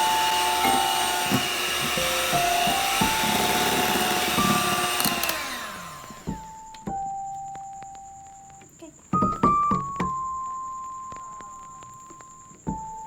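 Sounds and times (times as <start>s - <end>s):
electric mixer running: 0.0s - 6.6s
soft melodic background music: 0.0s - 13.0s.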